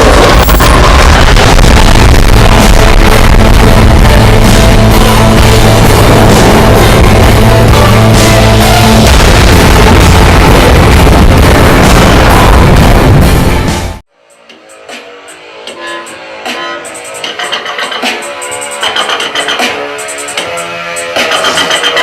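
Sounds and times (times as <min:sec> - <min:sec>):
instrumental hip-hop beat: 0:13.8 - 0:22.0.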